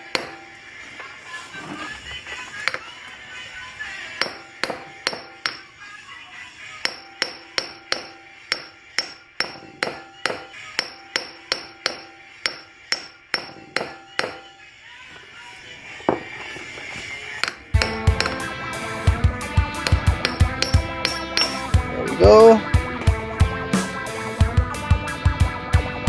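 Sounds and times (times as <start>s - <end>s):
hammer striking metal: 4.2s - 5.7s, 6.8s - 14.4s, 17.8s - 18.5s, 19.8s - 21.7s.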